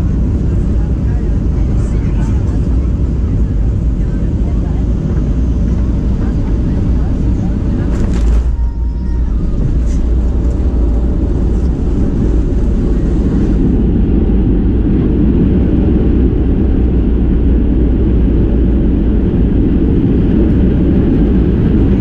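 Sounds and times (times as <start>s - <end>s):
airplane cabin engine rumble: 0.0s - 22.0s.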